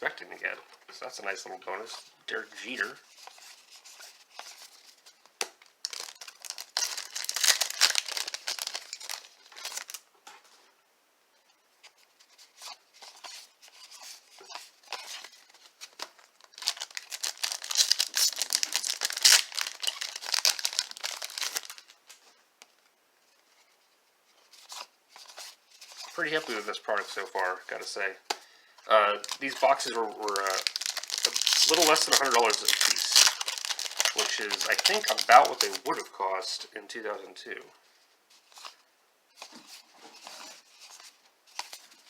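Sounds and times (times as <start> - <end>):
faint handling sounds: 0.0 - 42.0
wrapper tearing and crinkling: 5.6 - 10.0, 12.6 - 22.0, 29.1 - 36.1.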